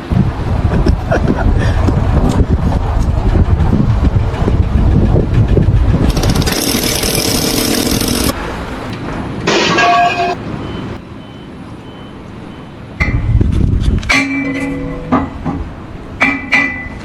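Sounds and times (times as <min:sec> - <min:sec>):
heavy vehicle engine rumble: 0:00.0 - 0:17.0
vehicle horn blast: 0:09.6 - 0:10.4.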